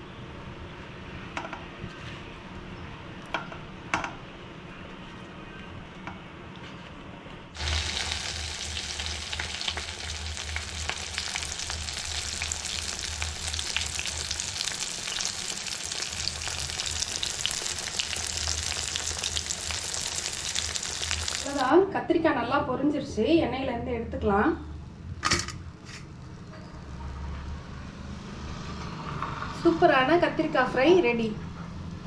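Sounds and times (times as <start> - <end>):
eggplant frying in hot oil: 7.6 - 21.7.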